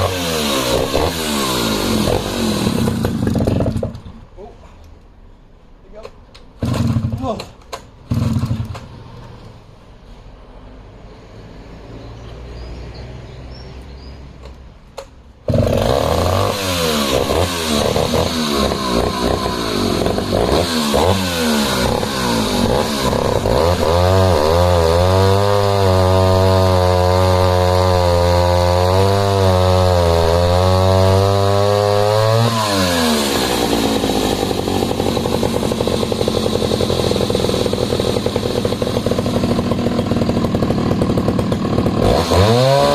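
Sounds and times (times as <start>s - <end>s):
two-stroke chainsaw engine running: 0.0s - 4.0s, 6.6s - 7.3s, 8.1s - 8.7s, 15.5s - 42.9s.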